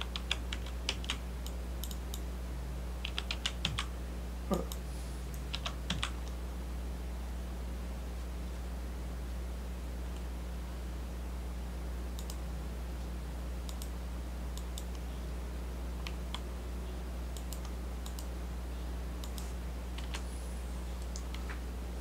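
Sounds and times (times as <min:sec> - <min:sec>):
low electrical hum: 0:00.0 - 0:22.0
mouse and keyboard clicks: 0:19.2 - 0:20.3.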